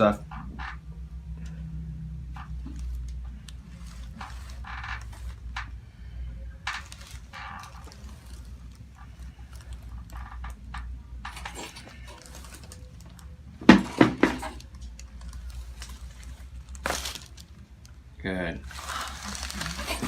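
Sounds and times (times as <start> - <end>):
neck joints popping: 0.0 - 1.6, 2.2 - 18.0, 18.6 - 20.0
rustling of hands and clothing: 2.4 - 5.8, 18.6 - 20.0.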